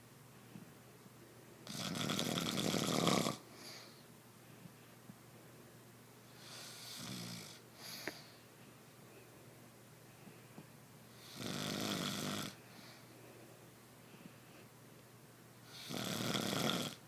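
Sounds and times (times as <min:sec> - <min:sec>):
person snoring: 0:01.6 - 0:03.4, 0:06.4 - 0:07.6, 0:11.2 - 0:12.6, 0:15.7 - 0:17.0.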